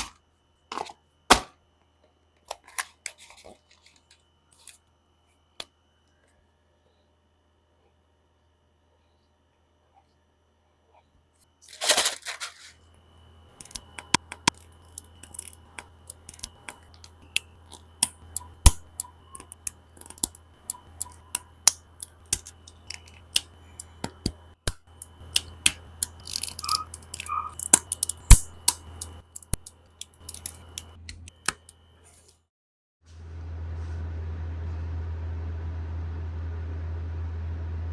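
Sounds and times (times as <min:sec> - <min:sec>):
plastic rustling: 0:11.6 - 0:12.8
plastic parts clicking and snapping: 0:13.6 - 0:31.8.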